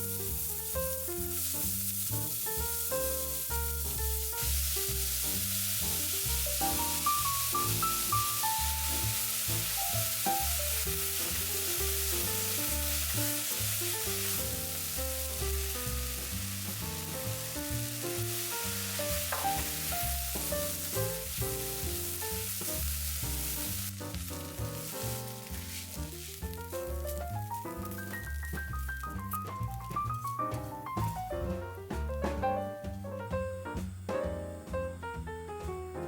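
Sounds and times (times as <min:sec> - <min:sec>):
food sizzling in oil: 0:00.0 - 0:31.5
background music: 0:06.0 - 0:22.6, 0:23.4 - 0:36.0.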